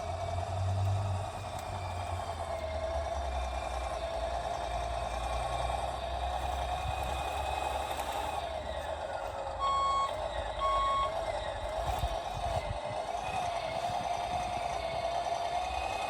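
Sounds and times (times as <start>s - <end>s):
model vehicle motor whine: 0.0s - 16.0s
short reversing beeps: 9.6s - 11.2s.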